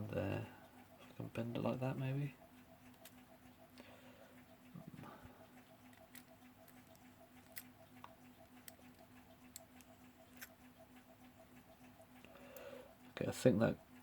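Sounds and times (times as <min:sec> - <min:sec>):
faint pulsing hum: 0:00.0 - 0:14.0.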